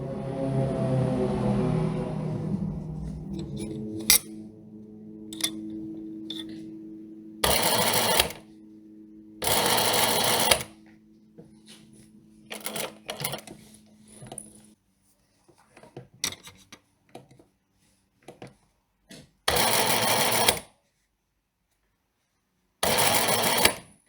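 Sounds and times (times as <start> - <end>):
steady low hum: 0.0 - 14.8
sewing machine stitching: 22.8 - 23.8.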